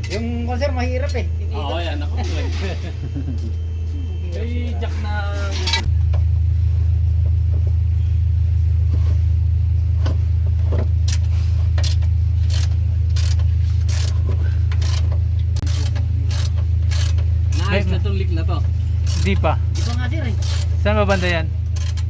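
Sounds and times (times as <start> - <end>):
car engine idling: 5.8 - 22.0.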